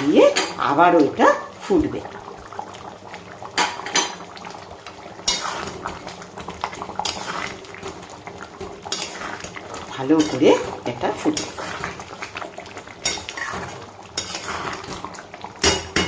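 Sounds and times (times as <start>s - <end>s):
curry bubbling: 0.0s - 16.0s
spoon scraping a pot: 5.2s - 5.8s, 8.8s - 12.0s, 13.0s - 15.1s.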